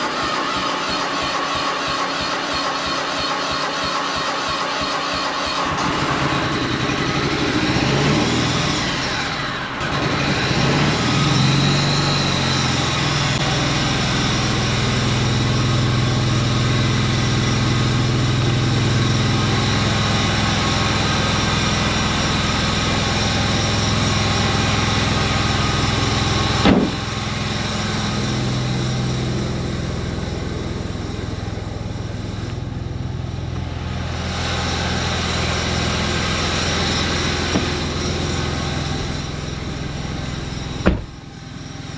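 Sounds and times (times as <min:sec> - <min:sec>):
engine running: 0:00.0 - 0:41.9
sharp knock: 0:40.8 - 0:41.1.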